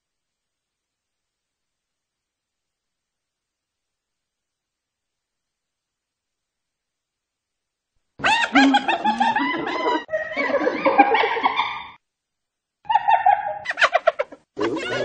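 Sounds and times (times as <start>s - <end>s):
hyena laughing: 8.2s - 12.0s, 12.9s - 15.0s.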